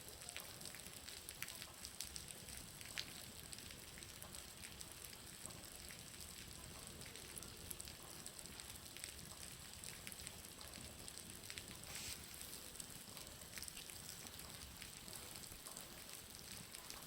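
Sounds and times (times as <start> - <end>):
water dripping from roof: 0.0 - 17.0
steady hiss: 11.7 - 12.8.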